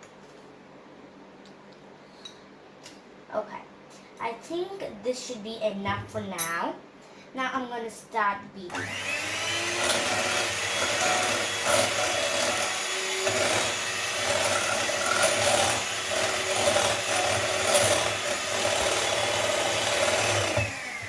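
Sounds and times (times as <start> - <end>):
electric mixer whipping: 8.7 - 21.0.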